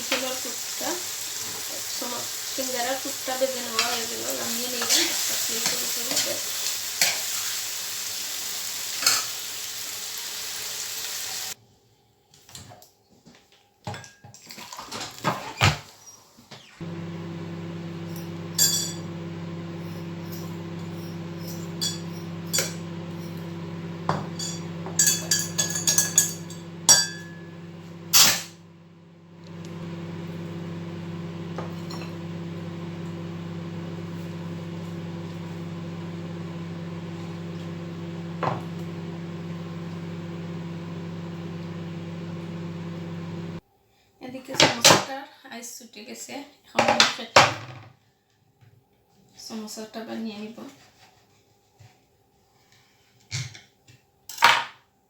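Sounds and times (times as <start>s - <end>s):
food sizzling in a pan: 0.0s - 11.6s, 16.8s - 28.6s
kitchen appliance electrical hum: 0.0s - 11.6s, 16.5s - 43.6s
utensils clinking against dishes: 24.3s - 27.4s.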